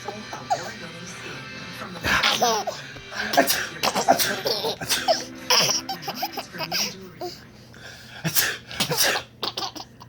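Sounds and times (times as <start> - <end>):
baby laughing: 2.2 - 2.8, 3.4 - 7.3, 9.0 - 10.0.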